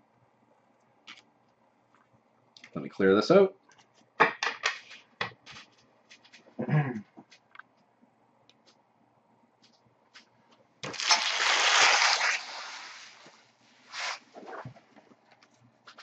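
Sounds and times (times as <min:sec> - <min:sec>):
packaging rustling and crinkling: 0:10.8 - 0:13.4.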